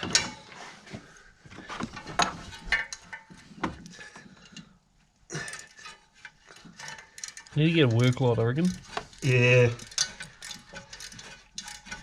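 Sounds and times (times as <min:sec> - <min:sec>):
spanner metallic clicks and knocks: 0:09.8 - 0:12.0.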